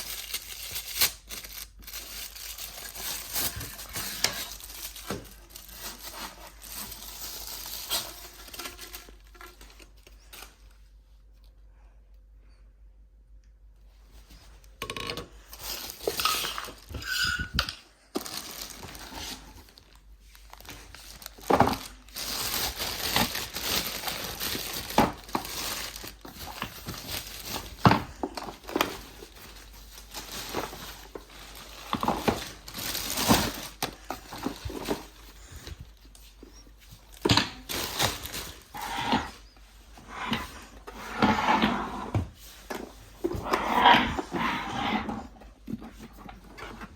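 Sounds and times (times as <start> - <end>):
plastic parts clattering: 0.0 - 10.6, 14.8 - 39.4
packaging rustling and crinkling: 0.0 - 11.5, 14.1 - 41.3.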